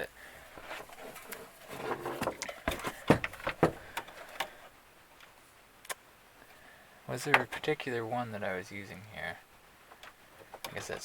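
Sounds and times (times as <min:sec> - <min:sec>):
handling clicks and knocks: 0:01.0 - 0:04.6, 0:07.2 - 0:07.7, 0:09.9 - 0:11.0.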